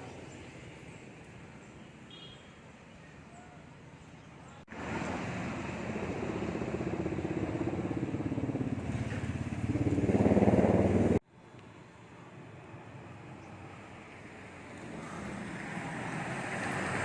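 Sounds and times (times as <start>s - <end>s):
motorcycle engine running: 5.8s - 11.2s.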